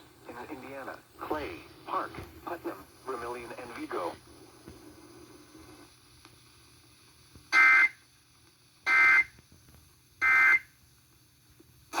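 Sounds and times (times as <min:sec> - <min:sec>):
digital data squawk bursts: 0:07.5 - 0:08.0, 0:08.9 - 0:09.3, 0:10.2 - 0:10.7.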